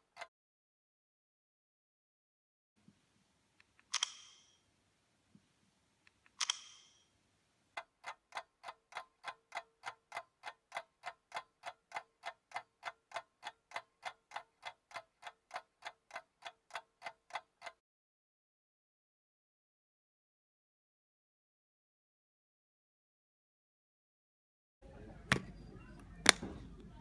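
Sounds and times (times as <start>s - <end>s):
mechanical ticking: 7.8s - 17.8s.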